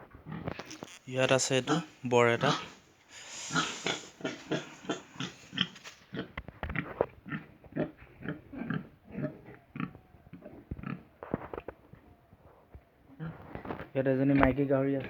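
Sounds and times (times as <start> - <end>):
pigs grunting: 0.2 - 11.1.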